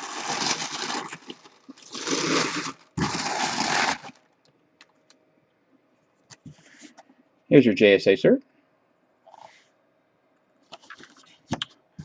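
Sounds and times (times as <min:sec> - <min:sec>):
packaging rustling and crinkling: 0:00.0 - 0:04.2.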